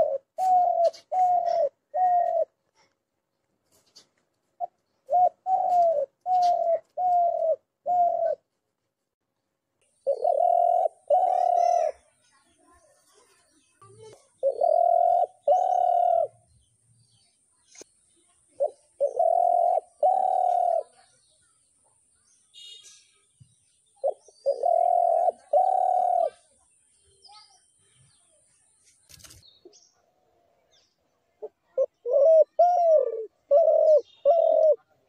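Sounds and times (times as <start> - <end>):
dove cooing: 0.0 - 2.6, 4.6 - 8.4, 10.0 - 12.0, 14.4 - 16.4, 18.6 - 21.0, 24.0 - 26.5, 31.4 - 34.9.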